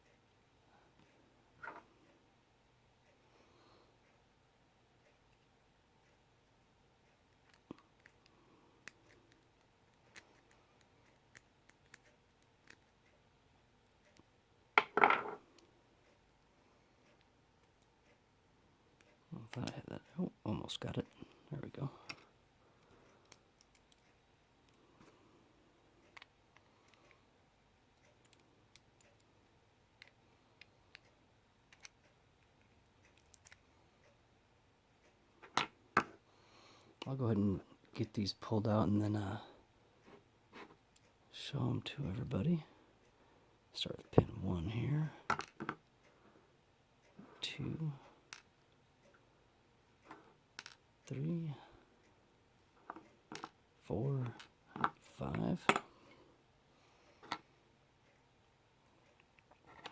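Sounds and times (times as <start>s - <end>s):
small metal clicks and ticks: 20.8s - 25.1s, 28.0s - 29.4s, 30.0s - 34.2s
small metallic ticks of padlock: 23.2s - 24.2s, 28.0s - 29.3s, 33.0s - 33.6s.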